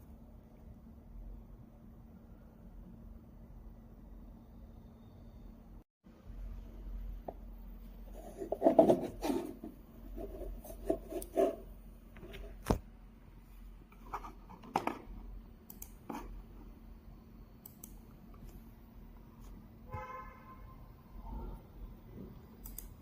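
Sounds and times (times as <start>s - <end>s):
rustling and scraping: 8.1s - 11.6s
sharp clicks: 22.6s - 23.0s.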